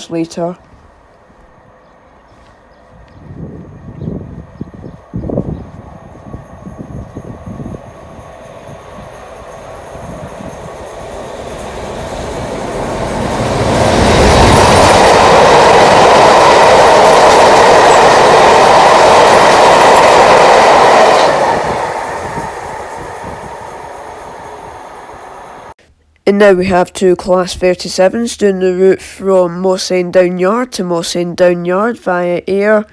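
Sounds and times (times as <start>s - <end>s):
freight train passing: 0.0s - 25.8s.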